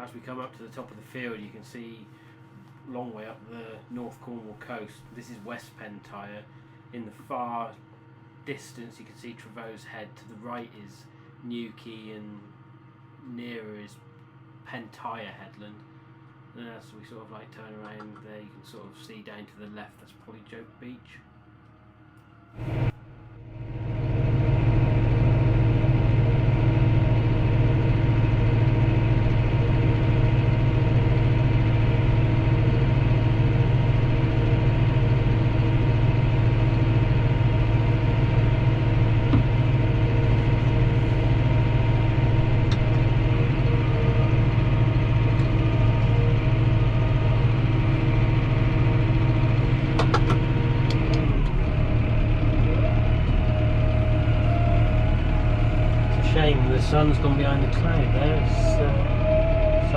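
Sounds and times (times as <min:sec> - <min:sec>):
tractor engine running: 0:22.6 - 0:59.9.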